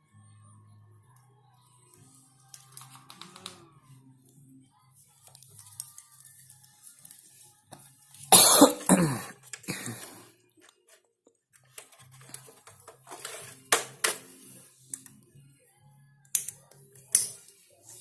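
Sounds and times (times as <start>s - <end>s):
person coughing: 8.3s - 10.2s.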